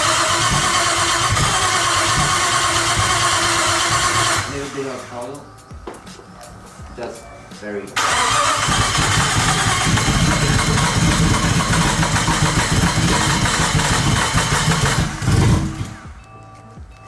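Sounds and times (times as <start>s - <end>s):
car engine running unevenly: 8.0s - 16.1s.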